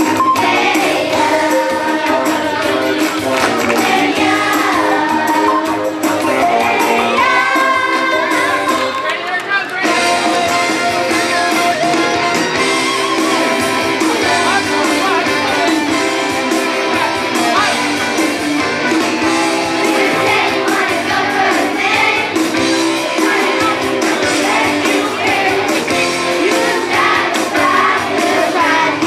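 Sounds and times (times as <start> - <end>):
chorus singing with instruments: 0.0 - 9.0, 9.9 - 29.0.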